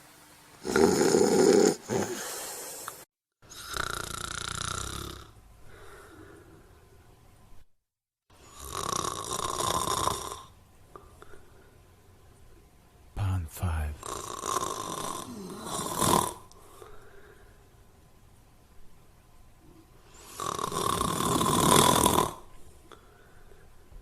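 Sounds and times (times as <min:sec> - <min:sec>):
rasping snores: 0:00.6 - 0:02.9, 0:03.5 - 0:05.4, 0:08.4 - 0:10.5, 0:14.0 - 0:16.4, 0:20.2 - 0:22.4.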